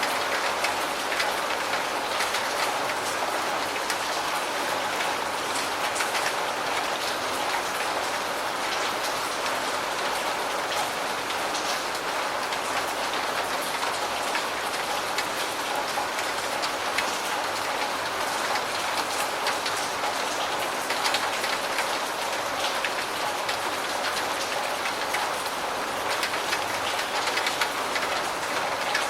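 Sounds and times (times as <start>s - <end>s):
steady rain falling: 0.0s - 29.0s
raindrop ticks: 0.1s - 3.2s, 11.6s - 29.0s.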